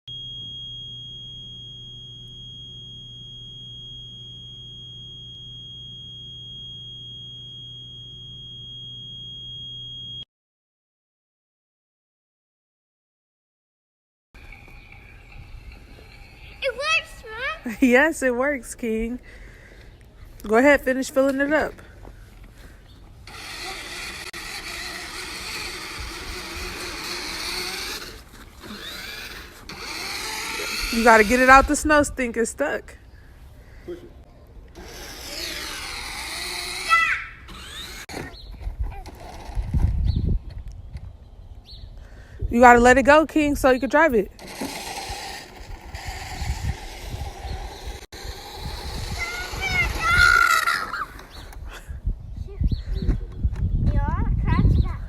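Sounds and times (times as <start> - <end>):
high-pitched electronic tone: 0.1 - 10.2
low hum: 0.1 - 10.2
small electric motor whining: 0.1 - 10.2, 14.4 - 18.6, 20.8 - 32.4, 34.7 - 40.3, 43.8 - 51.7.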